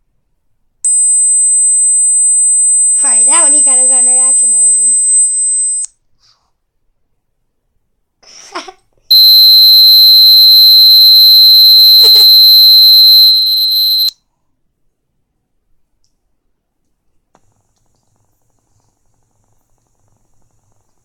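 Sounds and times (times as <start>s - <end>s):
high-pitched dog-whistle tone: 9.1s - 14.1s.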